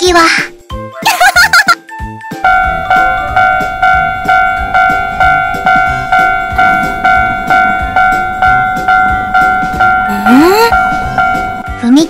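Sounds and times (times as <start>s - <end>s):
railroad crossing warning bell: 2.4s - 12.0s.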